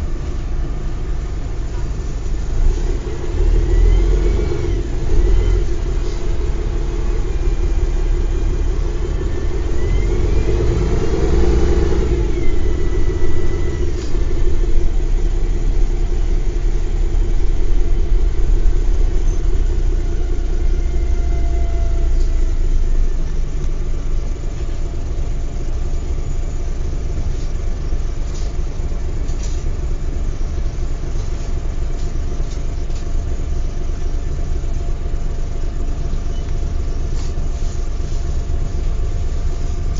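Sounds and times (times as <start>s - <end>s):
engine whine rising in pitch: 0.0s - 29.2s
bus diesel engine rumbling: 0.0s - 39.9s.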